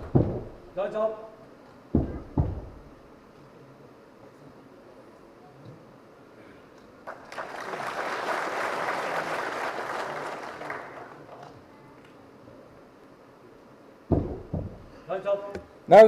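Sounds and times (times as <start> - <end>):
audience applauding: 7.0 - 11.5.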